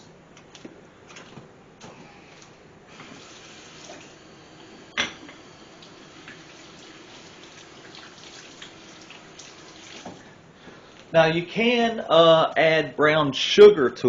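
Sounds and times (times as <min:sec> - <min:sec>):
tap running: 0:02.9 - 0:10.3
hands washing under water: 0:05.8 - 0:10.3.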